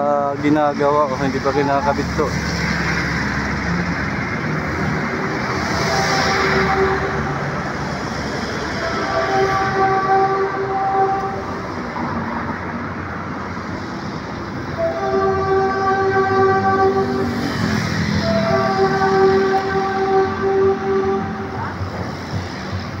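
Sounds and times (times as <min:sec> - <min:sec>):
train rumbling past: 0:00.0 - 0:23.0
train horn chord: 0:05.5 - 0:07.8, 0:08.7 - 0:11.6, 0:14.8 - 0:21.8.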